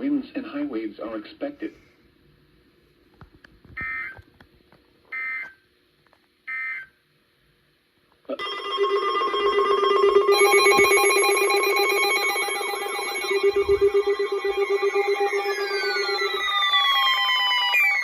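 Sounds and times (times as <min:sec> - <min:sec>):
pulsing electronic alert tone: 0:08.4 - 0:18.0
electronic data bursts: 0:10.4 - 0:18.0.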